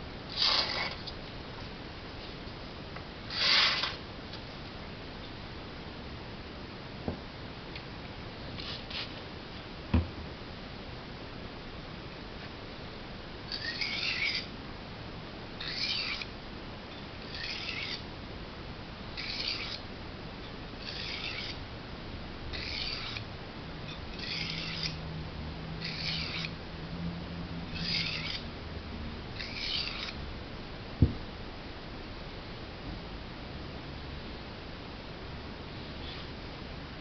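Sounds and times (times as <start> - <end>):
knife scraping on sharpening stone: 0.3 - 1.1, 3.3 - 4.0, 13.5 - 14.5, 15.6 - 16.3, 17.3 - 18.0, 19.2 - 19.8, 20.8 - 21.6, 22.5 - 23.2, 23.9 - 25.0, 25.8 - 26.5, 27.8 - 28.4, 29.4 - 30.2.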